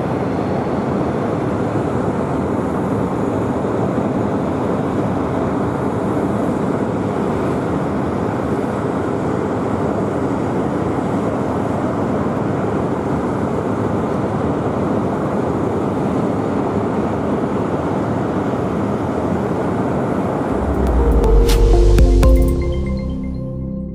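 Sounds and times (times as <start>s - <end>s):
jet engine noise: 0.0s - 21.4s
music: 20.5s - 23.9s.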